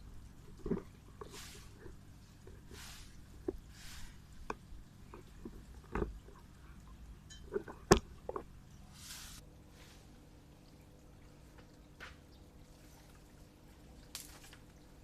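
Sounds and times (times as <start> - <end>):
hissing rustles: 0.7 - 4.3, 8.9 - 10.1.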